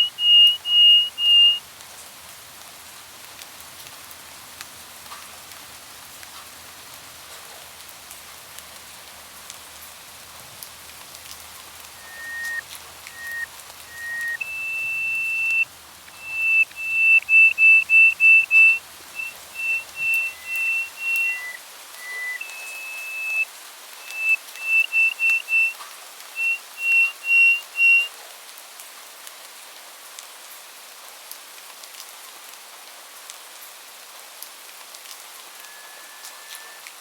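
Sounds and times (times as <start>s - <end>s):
songbird whistling: 0.0s - 1.6s, 12.0s - 25.8s, 26.4s - 28.1s, 35.6s - 36.8s
faint background hiss: 0.0s - 37.0s.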